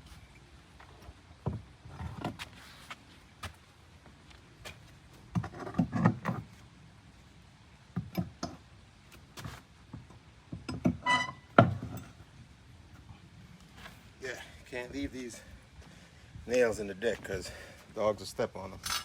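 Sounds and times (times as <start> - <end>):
nail squealing out of wood: 11.0 - 11.4.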